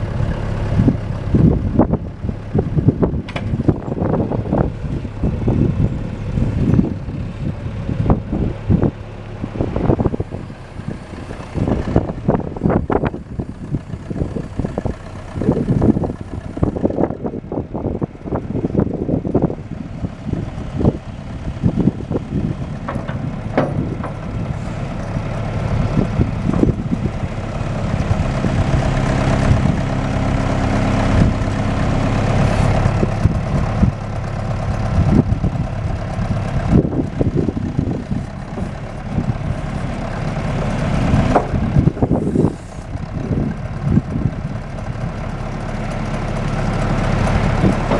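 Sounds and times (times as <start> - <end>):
diesel engine running: 0.0 - 47.9
knocks and clanks: 3.3 - 3.7, 22.7 - 25.1, 26.4 - 26.9, 41.2 - 41.8.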